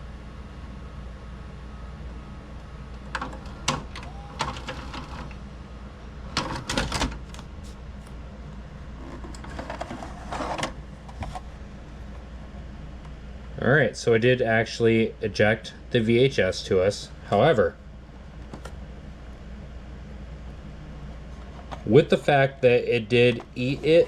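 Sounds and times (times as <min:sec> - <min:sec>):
mechanical clicks and clunks: 0:02.9 - 0:05.4, 0:06.3 - 0:07.4.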